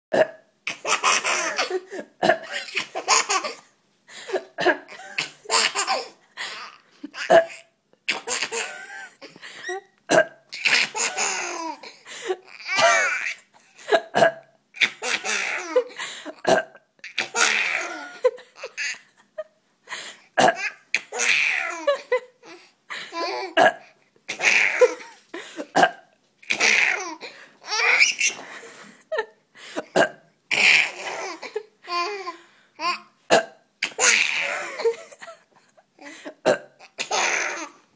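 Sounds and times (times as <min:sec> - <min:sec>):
adult fake burps: 0:00.1 - 0:00.5, 0:07.2 - 0:07.7, 0:10.1 - 0:10.7, 0:14.0 - 0:14.6, 0:16.4 - 0:17.4, 0:20.4 - 0:20.8, 0:23.6 - 0:24.6, 0:25.7 - 0:26.1, 0:29.9 - 0:31.1, 0:33.3 - 0:34.4, 0:36.4 - 0:37.4
child laughing hysterically: 0:10.6 - 0:11.8, 0:12.4 - 0:13.5, 0:17.2 - 0:19.2, 0:26.6 - 0:29.2, 0:34.0 - 0:35.3.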